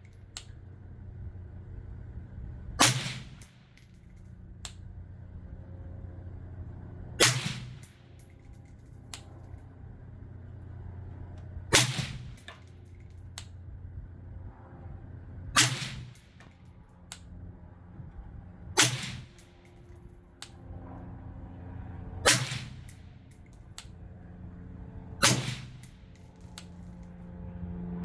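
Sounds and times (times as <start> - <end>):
suppressed rifle shots: 2.8 - 3.5, 7.2 - 7.9, 11.8 - 12.4, 15.6 - 16.2, 18.8 - 19.4, 25.2 - 25.8.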